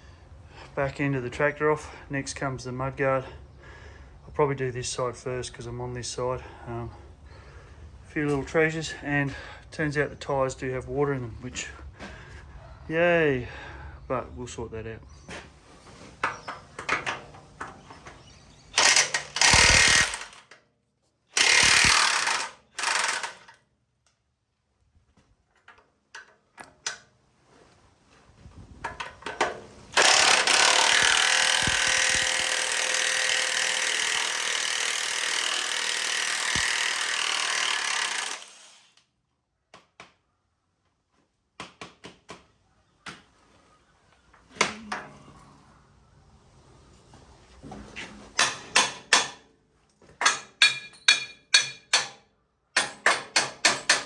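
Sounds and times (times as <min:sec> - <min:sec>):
tool clicks and knocks: 0:16.2 - 0:18.2, 0:18.8 - 0:20.6, 0:25.6 - 0:27.1, 0:28.8 - 0:30.7, 0:48.3 - 0:49.5, 0:50.1 - 0:52.2, 0:52.8 - 0:54.0
impact wrench bursts: 0:16.2 - 0:20.6, 0:21.4 - 0:23.6, 0:29.4 - 0:39.0.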